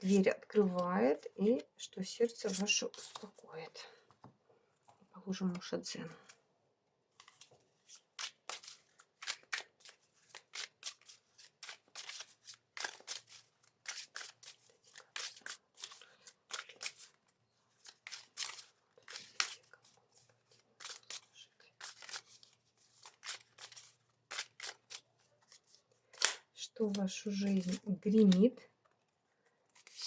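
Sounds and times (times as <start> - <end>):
cards being shuffled: 2.3 - 3.4, 7.1 - 29.1, 29.7 - 30.0.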